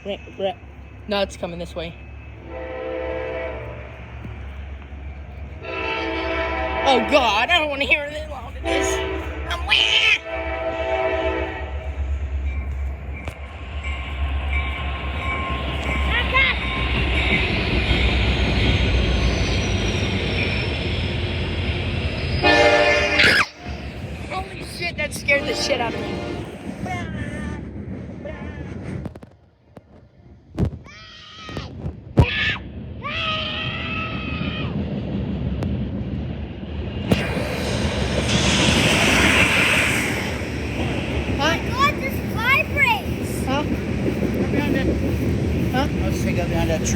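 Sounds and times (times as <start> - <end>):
freight train wheels rumbling: 0.0 - 46.9
train horn: 2.4 - 3.9, 5.6 - 7.4, 8.6 - 11.9, 22.4 - 23.9, 25.3 - 26.7
wheel and rail hiss: 36.7 - 46.9
thin high whine: 37.0 - 42.3.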